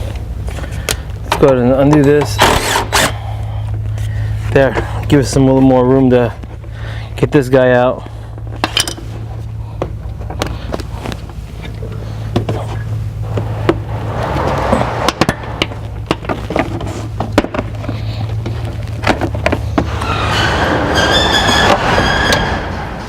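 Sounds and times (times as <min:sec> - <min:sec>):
steady low hum: 0:00.0 - 0:23.0
rustling scrape: 0:12.8 - 0:19.0.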